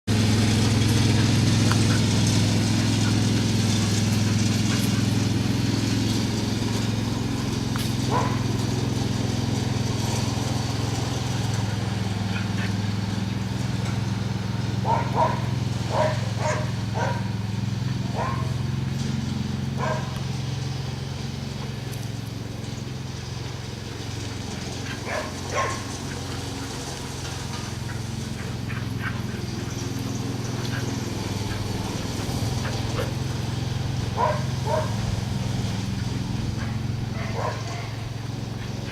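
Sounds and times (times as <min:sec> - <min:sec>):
lawn mower engine running: 0:00.0 - 0:38.9
dog barking: 0:08.1 - 0:08.4, 0:14.8 - 0:17.3, 0:18.1 - 0:18.6, 0:19.8 - 0:20.2, 0:25.0 - 0:25.9, 0:34.2 - 0:35.0, 0:36.6 - 0:38.0.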